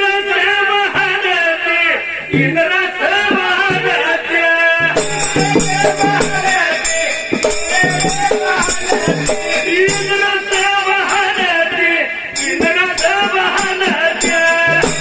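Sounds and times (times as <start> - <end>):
person singing: 0.0 - 15.0
jingling hand percussion: 4.9 - 15.0
sustained instrumental tones: 5.0 - 11.3.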